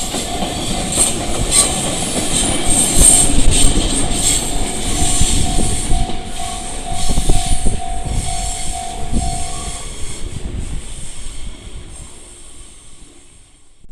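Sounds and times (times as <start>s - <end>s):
wheels knocking on rail joints: 0.0s - 9.6s
level-crossing alarm bell: 0.0s - 10.2s
train passing: 0.0s - 13.8s.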